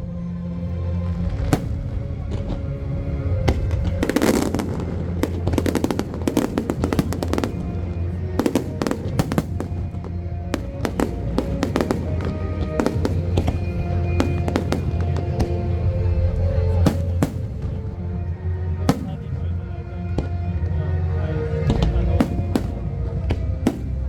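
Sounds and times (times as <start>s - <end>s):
fireworks bangs and crackles: 1.3s - 2.6s, 3.4s - 18.0s, 18.9s - 19.4s, 21.6s - 24.0s.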